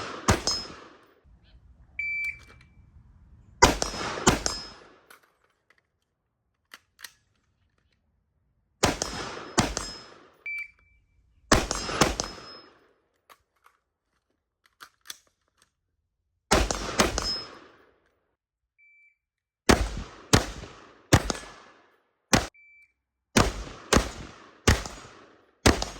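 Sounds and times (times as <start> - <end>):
rifle shots echoing: 0.0 - 1.1, 3.6 - 5.1, 8.8 - 10.4, 11.5 - 12.8, 16.5 - 17.8, 19.7 - 22.5, 23.4 - 25.9.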